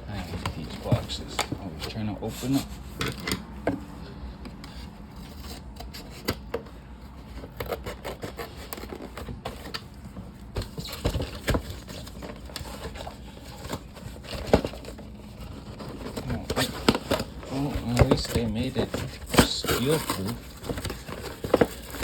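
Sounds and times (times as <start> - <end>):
fingers scratching cardboard box: 7.2 - 9.8, 10.6 - 22.0.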